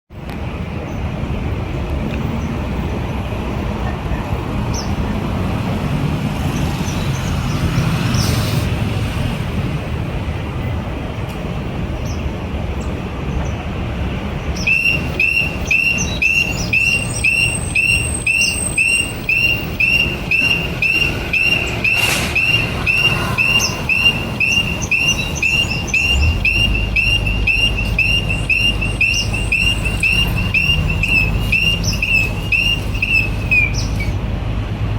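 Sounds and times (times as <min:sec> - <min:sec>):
road traffic: 0:00.1 - 0:34.9
crossing signal chirps: 0:14.6 - 0:34.2.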